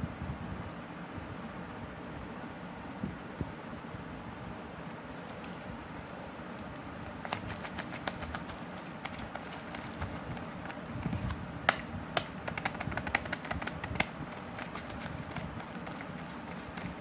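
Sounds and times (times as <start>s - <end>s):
sharp taps and clicks: 6.9s - 17.0s.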